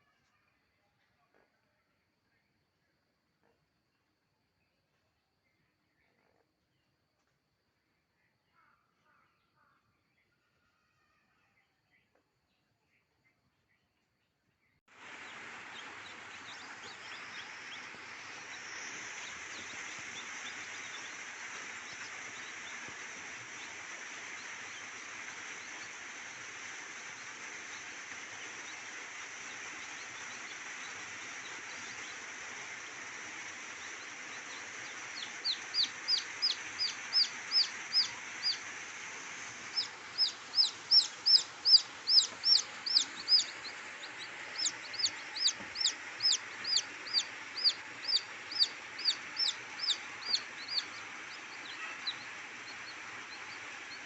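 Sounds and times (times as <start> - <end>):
steady background hiss: 14.9 - 54.0
rapid high bird chirps: 15.0 - 54.0.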